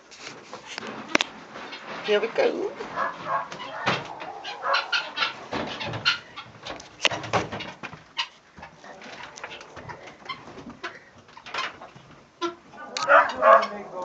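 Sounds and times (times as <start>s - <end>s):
sharp clicks and knocks: 5.2s - 12.2s.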